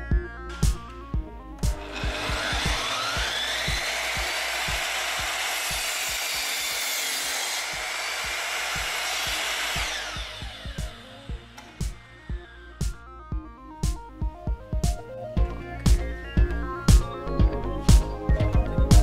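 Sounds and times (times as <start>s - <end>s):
background music with steady beat: 0.0s - 19.0s
electric mitre saw motor whine: 0.1s - 13.9s.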